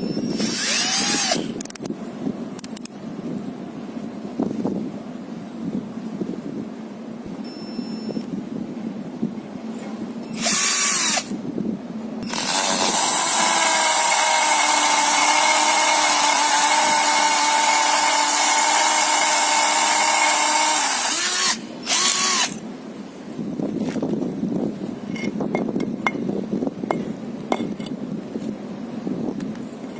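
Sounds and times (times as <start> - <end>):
drill motor spinning: 0.2 - 1.5, 10.3 - 11.3, 12.2 - 22.6.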